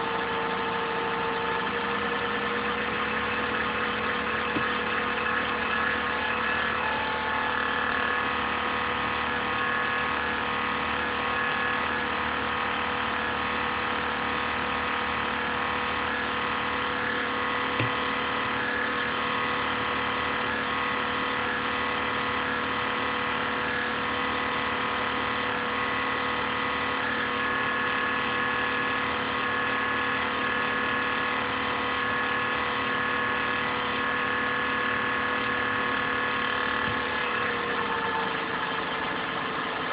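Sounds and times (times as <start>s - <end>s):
laptop cooling fan humming: 0.0s - 10.2s, 16.3s - 20.5s, 34.4s - 38.8s.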